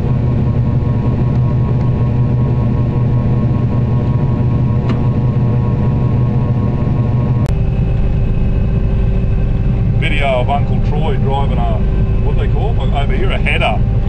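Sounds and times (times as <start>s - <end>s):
combine harvester engine running: 0.0s - 14.0s.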